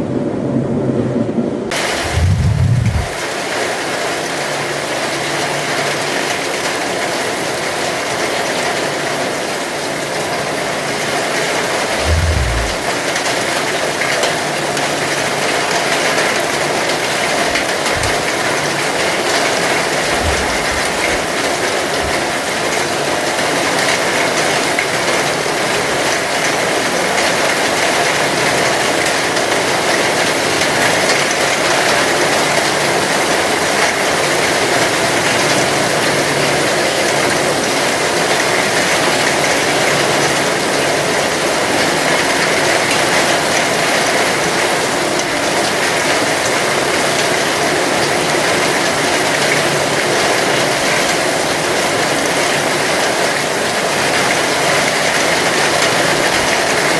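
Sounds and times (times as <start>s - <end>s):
heavy rain: 0.0s - 56.9s
low thumps: 2.0s - 3.2s, 12.0s - 12.9s, 20.1s - 21.4s.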